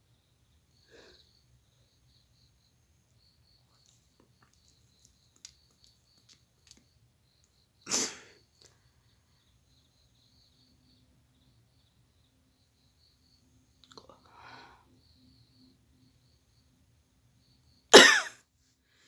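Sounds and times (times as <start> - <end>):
faint sniffs: 7.9 - 9.1
woman sneezing: 18.0 - 18.3.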